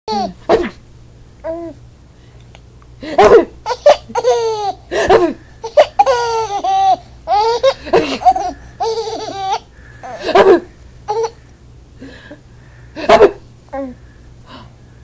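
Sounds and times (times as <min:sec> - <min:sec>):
baby laughing: 0:03.2 - 0:11.4.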